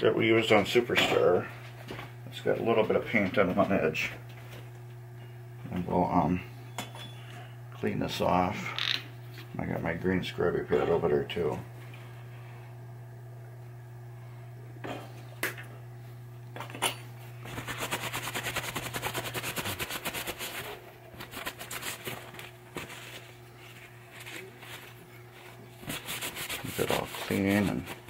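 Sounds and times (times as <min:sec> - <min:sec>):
steady low hum: 0:00.0 - 0:28.0
scrubbing by hand: 0:17.5 - 0:28.0.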